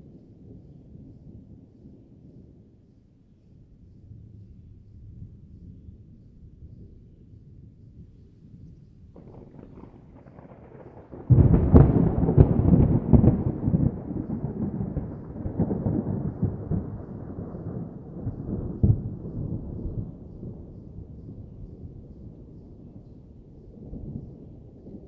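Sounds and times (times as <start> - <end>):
thunder rumbling and cracking: 9.2 - 25.0.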